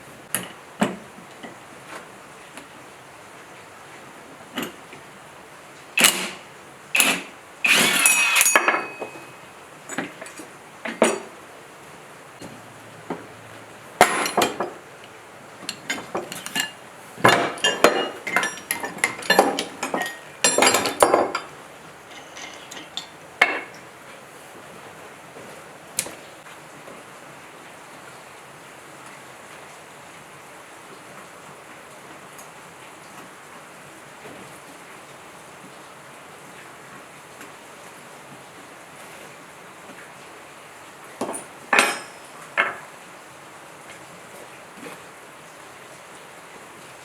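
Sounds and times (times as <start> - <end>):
metal tools clanking: 7.0 - 11.3, 14.0 - 23.9, 41.2 - 42.8.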